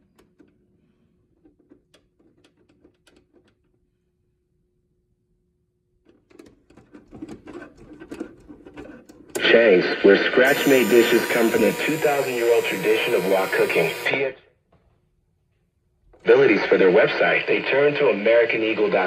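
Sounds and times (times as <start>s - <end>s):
radio static crackling: 9.4s - 14.2s.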